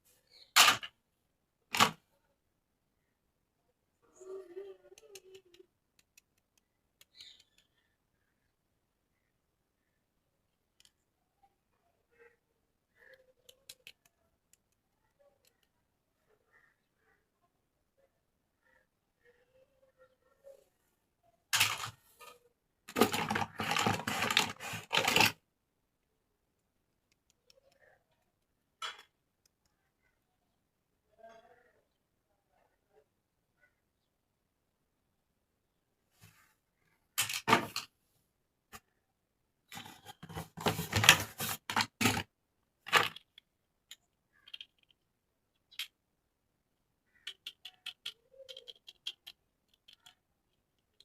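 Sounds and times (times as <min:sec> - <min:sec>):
plastic packaging rustling: 0:22.9 - 0:25.4.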